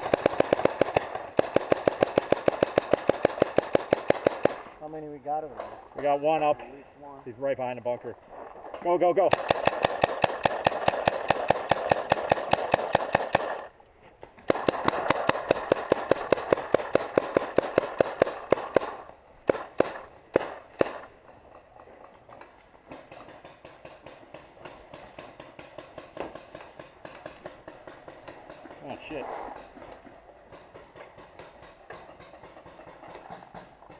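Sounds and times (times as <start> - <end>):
paintball marker rapid fire: 0.0 - 4.8, 8.4 - 13.8, 14.4 - 33.9
distant rapid fire: 0.0 - 4.9, 8.2 - 13.8, 14.4 - 22.1, 22.9 - 33.9.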